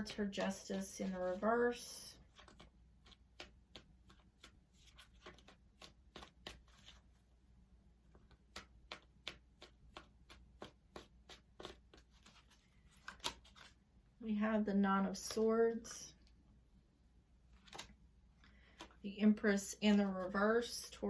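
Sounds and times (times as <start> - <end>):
cards being shuffled: 0.0 - 7.2, 8.1 - 13.8, 17.5 - 19.0.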